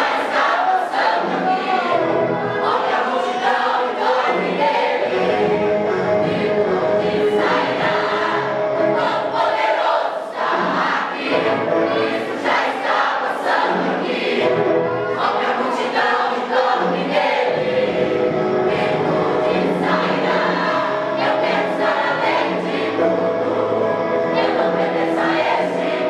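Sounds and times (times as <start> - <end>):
group singing gospel in harmony: 0.0 - 26.0
band accompaniment: 3.6 - 9.5, 10.4 - 12.6, 13.4 - 26.0.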